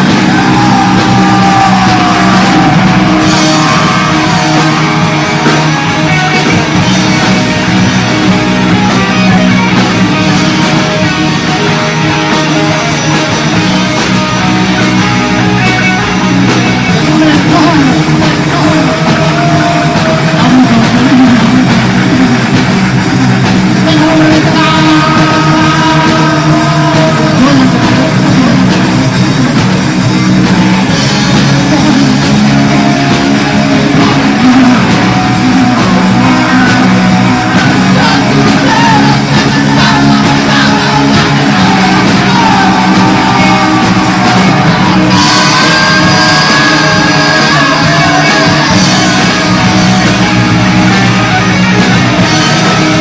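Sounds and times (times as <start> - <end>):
person singing: 0.0 - 53.0
punk rock band playing live: 0.0 - 53.0
bright high melodic line: 30.0 - 53.0.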